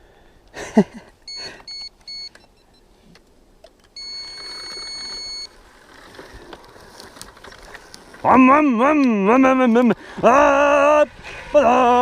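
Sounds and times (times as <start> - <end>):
electronic beeps: 4.0 - 5.5.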